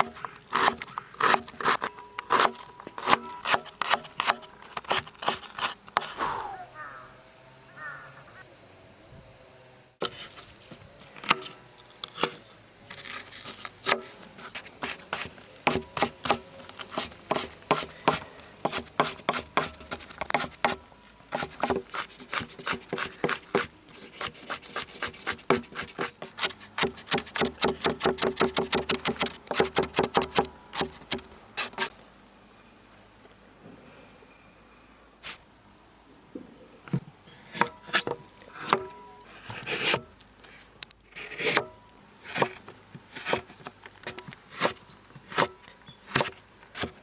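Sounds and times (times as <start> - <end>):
knife chopping on wooden board: 14.8 - 31.9, 46.1 - 47.0.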